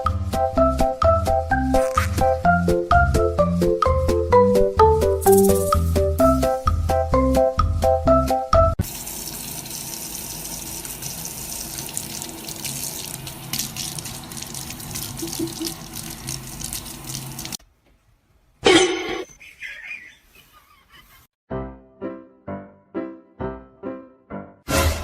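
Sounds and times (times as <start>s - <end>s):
running water rushing: 9.0s - 17.6s.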